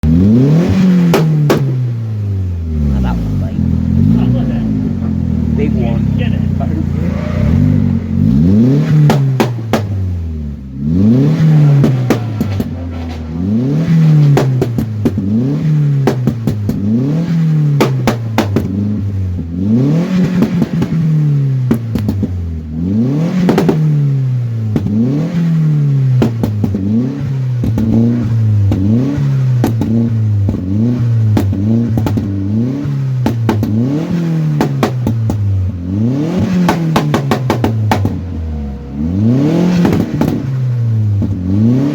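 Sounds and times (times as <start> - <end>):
car engine revving: 0.0 - 41.9
exhaust pops and crackles: 0.6 - 2.1, 8.8 - 10.2, 11.3 - 19.2, 20.1 - 22.4, 23.3 - 24.0, 24.6 - 25.1, 26.0 - 41.9.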